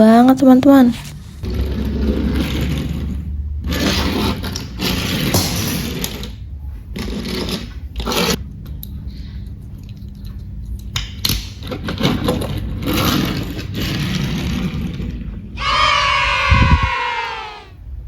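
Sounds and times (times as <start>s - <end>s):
toy car scraping and rustling: 1.0s - 6.4s, 7.0s - 8.4s, 11.8s - 15.2s.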